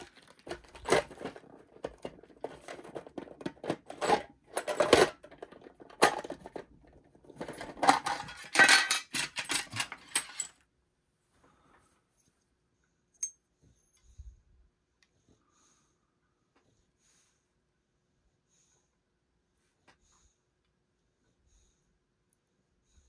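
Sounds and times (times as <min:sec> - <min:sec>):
metal lock parts clinking: 0:07.6 - 0:10.6.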